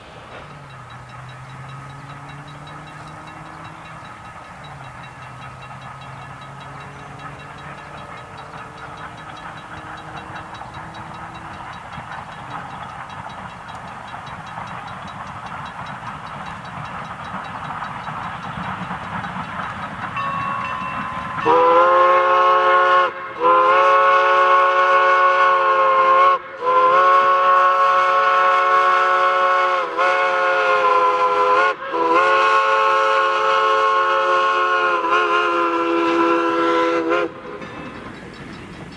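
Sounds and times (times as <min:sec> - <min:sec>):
steam train running: 0:00.0 - 0:38.9
steam whistle chord: 0:20.2 - 0:38.9.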